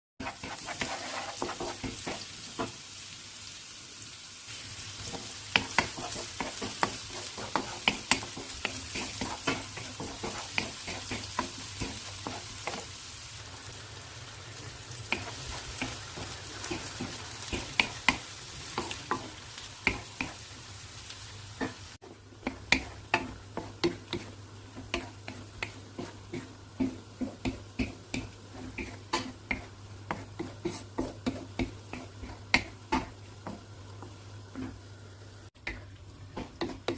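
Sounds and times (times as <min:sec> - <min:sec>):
chicken sizzling in a frying pan: 0:00.2 - 0:36.9
utensil clicking against pan: 0:22.4 - 0:33.6.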